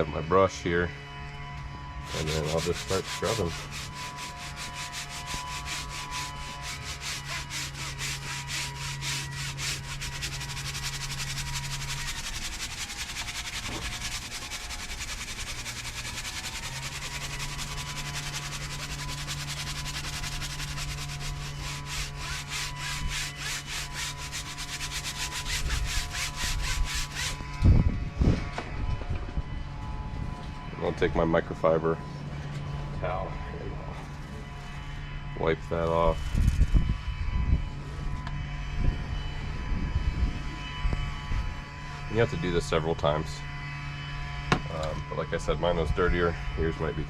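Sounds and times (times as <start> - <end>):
brush scrubbing fabric: 2.1 - 27.4.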